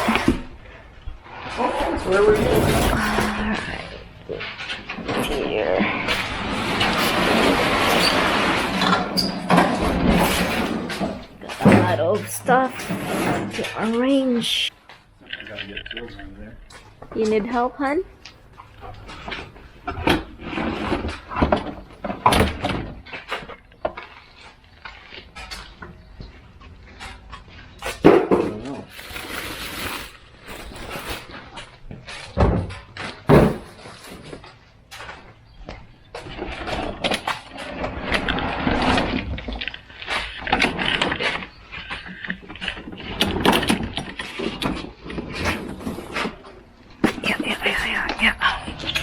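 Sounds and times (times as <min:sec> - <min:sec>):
rustling: 0:00.0 - 0:17.4, 0:18.2 - 0:49.0
objects clattering and rattling: 0:00.0 - 0:49.0.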